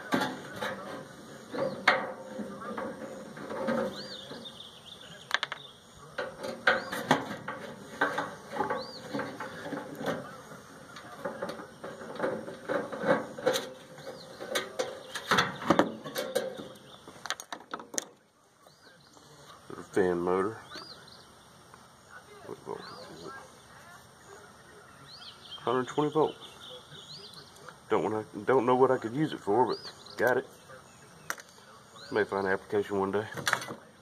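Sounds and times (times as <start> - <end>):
tools and metal parts clanking: 0.0 - 4.5, 6.2 - 18.2, 33.3 - 33.8.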